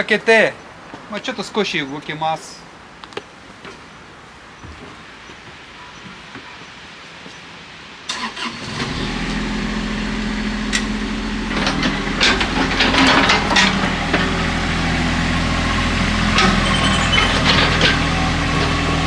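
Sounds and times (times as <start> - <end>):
diesel engine starting and running: 8.1 - 19.0
metallic clanking and rattling: 11.5 - 14.4.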